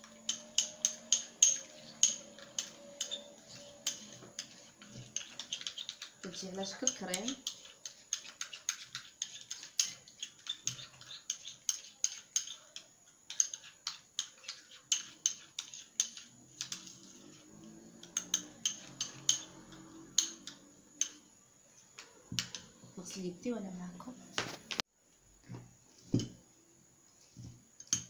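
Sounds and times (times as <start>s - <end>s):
spoon scraping a small bowl: 0.0s - 21.2s.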